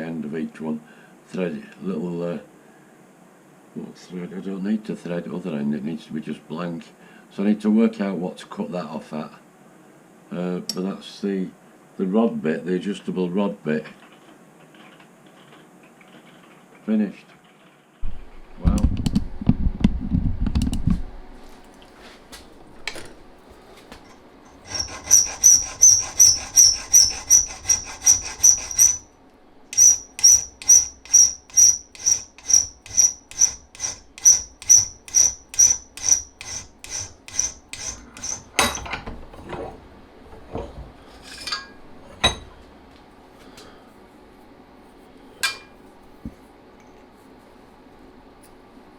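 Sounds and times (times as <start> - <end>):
hand tool strokes on metal rod: 24.5 - 29.1, 29.7 - 38.8.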